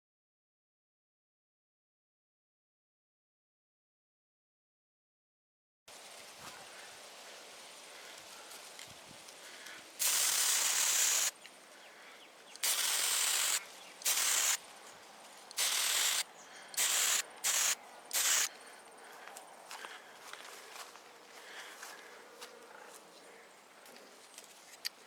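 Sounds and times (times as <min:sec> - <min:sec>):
spray paint can hissing: 0:10.0 - 0:11.4, 0:12.6 - 0:14.6, 0:15.5 - 0:18.5.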